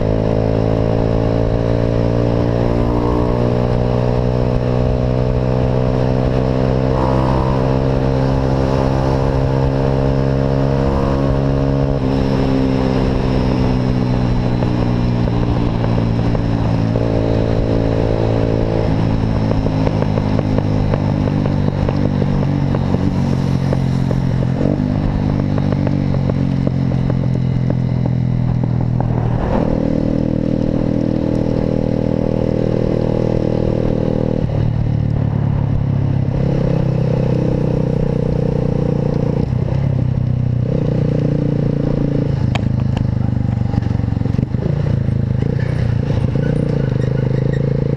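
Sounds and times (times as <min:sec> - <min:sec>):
car exhaust drone: 0:00.0 - 0:36.5.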